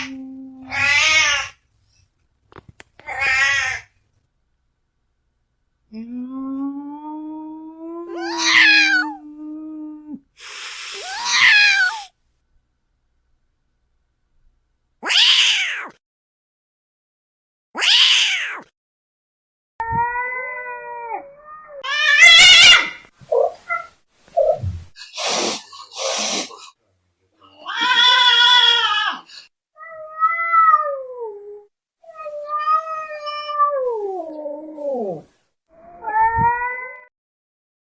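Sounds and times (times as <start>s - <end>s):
cat hissing: 0.0s - 1.6s, 3.0s - 3.9s, 8.1s - 9.2s, 10.4s - 12.1s, 22.1s - 26.7s
cats yowling: 0.0s - 1.6s, 3.0s - 3.9s, 7.9s - 10.0s, 11.0s - 12.1s, 15.0s - 15.9s, 17.8s - 18.6s, 19.8s - 24.6s, 27.4s - 37.1s
high cat screech: 0.7s - 1.6s, 3.0s - 3.9s, 10.8s - 12.1s, 21.8s - 23.0s.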